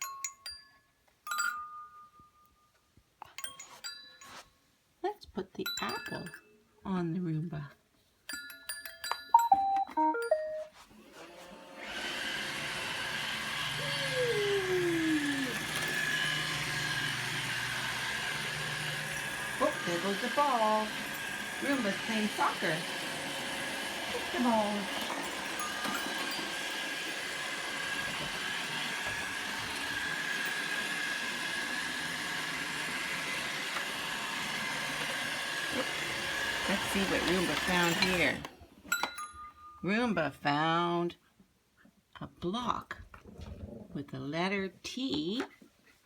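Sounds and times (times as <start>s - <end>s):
robot vacuum whirring: 11.0s - 38.5s.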